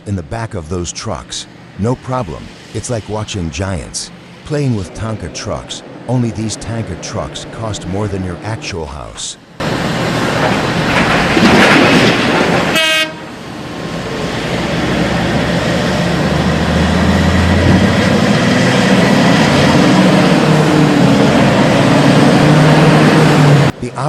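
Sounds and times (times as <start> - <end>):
heavy diesel machinery running: 0.0 - 24.0
horn blast: 12.7 - 13.4.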